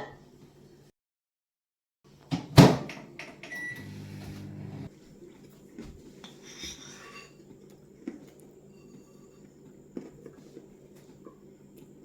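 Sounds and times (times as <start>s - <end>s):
microwave running hum: 3.4s - 4.9s
microwave keypad beep: 3.5s - 4.7s.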